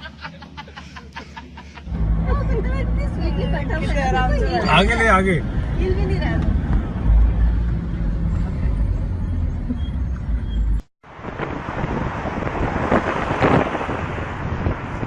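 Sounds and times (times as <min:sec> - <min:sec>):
wind buffeting microphone: 0:11.1 - 0:15.0.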